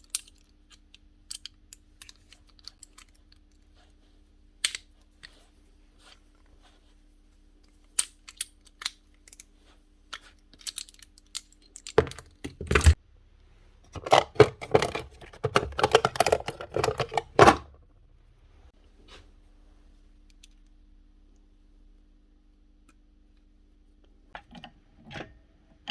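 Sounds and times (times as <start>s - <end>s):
small parts clicking and clattering: 0.0s - 4.0s, 4.6s - 6.2s, 7.6s - 13.0s, 14.0s - 17.6s.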